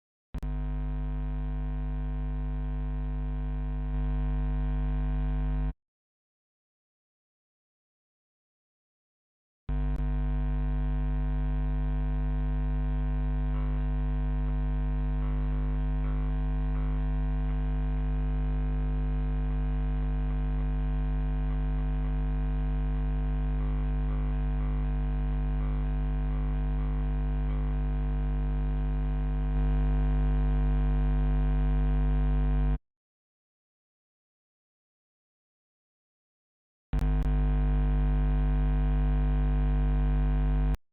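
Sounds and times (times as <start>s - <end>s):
camera electrical hum: 13.5s - 18.2s.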